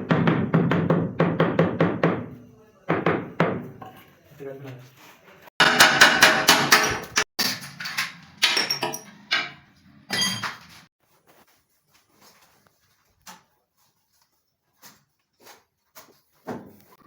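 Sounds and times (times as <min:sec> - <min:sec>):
tiles and tools knocking: 0:05.6 - 0:10.7.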